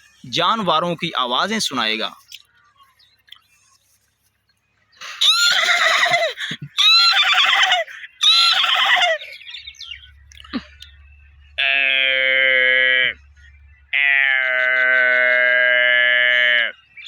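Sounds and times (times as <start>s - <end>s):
man imitating horse whinny: 5.0s - 9.2s, 14.2s - 16.7s.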